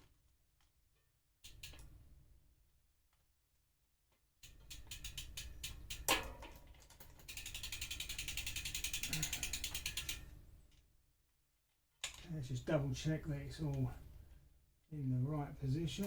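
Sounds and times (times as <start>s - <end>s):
bicycle freehub ratchet clicking: 4.4s - 6.1s, 7.2s - 10.2s.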